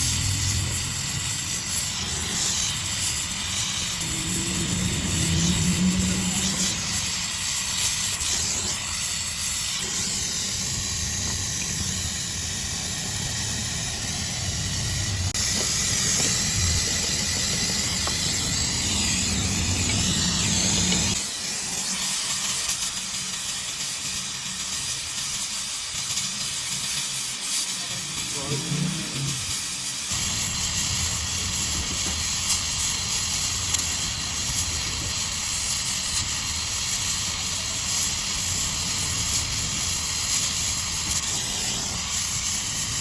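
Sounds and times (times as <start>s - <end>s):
low rumble: 0.0s - 21.2s
loud hissing rush: 0.0s - 43.0s.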